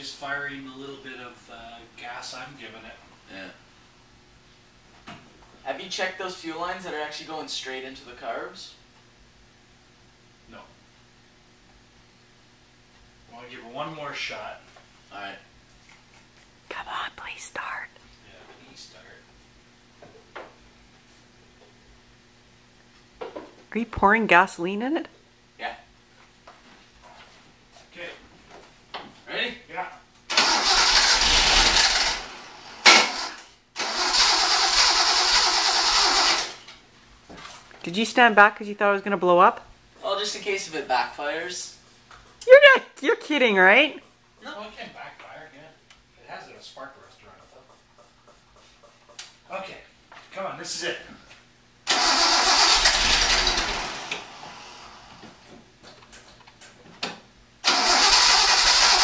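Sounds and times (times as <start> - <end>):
car engine cranking on starter: 30.3 - 36.6, 51.9 - 55.0, 57.6 - 59.0.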